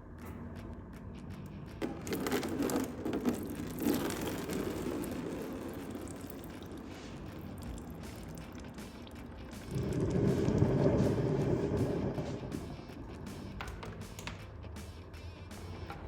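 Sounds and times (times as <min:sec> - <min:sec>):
scraping and crinkling handling: 0:01.8 - 0:07.1.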